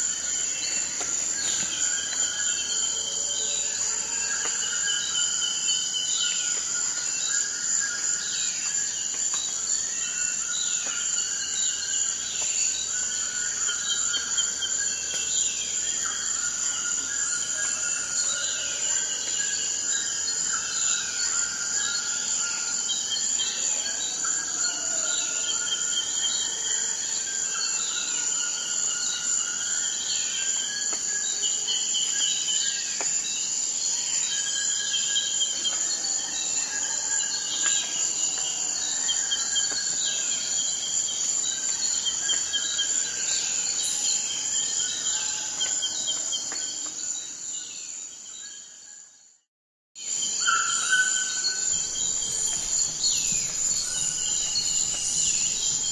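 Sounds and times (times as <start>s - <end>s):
insect chorus buzzing: 0.0s - 48.8s, 50.0s - 55.9s
birds calling: 50.5s - 55.9s.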